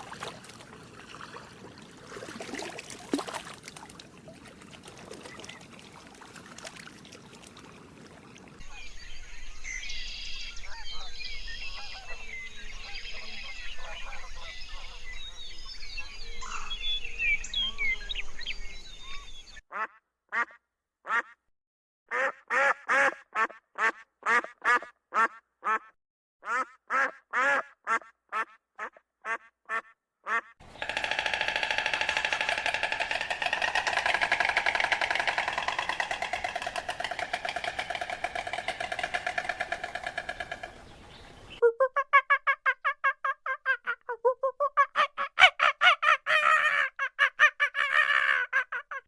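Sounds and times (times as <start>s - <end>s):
small birds chirping: 8.6s - 19.6s, 30.6s - 41.6s.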